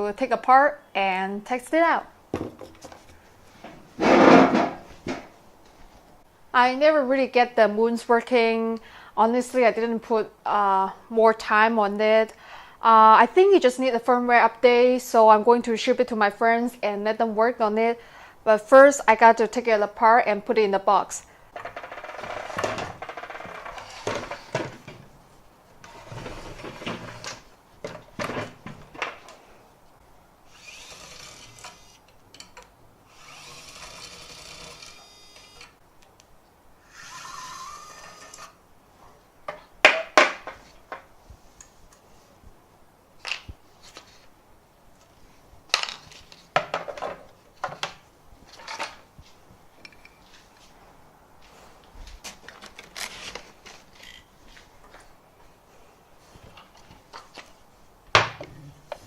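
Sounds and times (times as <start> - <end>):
electric screwdriver whirring: 30.5 - 32.0, 33.1 - 35.8, 36.9 - 38.6.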